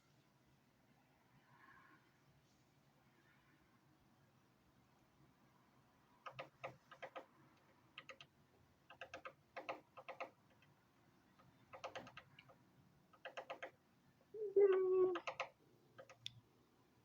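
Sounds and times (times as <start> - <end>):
woodpecker tapping on wood: 8.9 - 10.4, 13.2 - 13.8.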